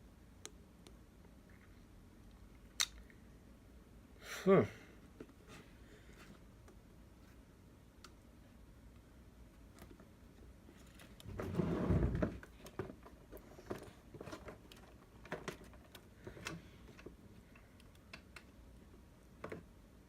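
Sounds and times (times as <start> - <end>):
clicks and taps of small parts: 14.6 - 18.6.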